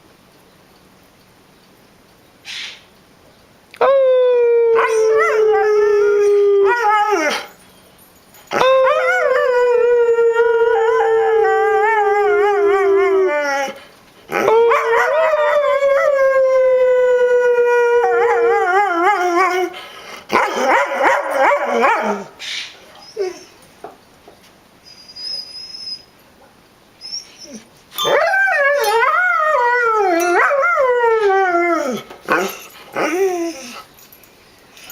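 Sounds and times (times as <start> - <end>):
dog howling: 3.8 - 7.5, 8.5 - 22.4, 27.1 - 33.9
dog yelping barks: 20.3 - 22.3.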